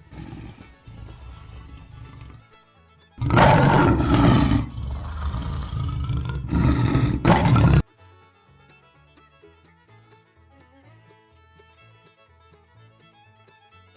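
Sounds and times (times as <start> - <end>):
lion roaring: 0.0 - 2.4, 3.2 - 7.8
background music: 0.0 - 13.9.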